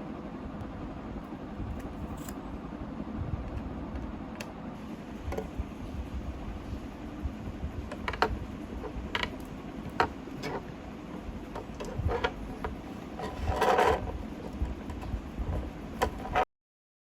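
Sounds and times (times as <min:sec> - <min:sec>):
scrape or rustle: 0:13.2 - 0:14.2.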